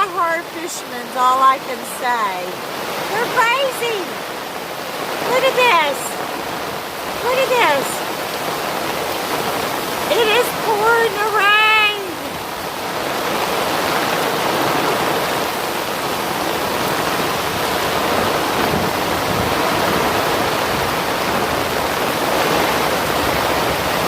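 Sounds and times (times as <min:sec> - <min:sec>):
heavy rain: 0:00.0 - 0:24.0.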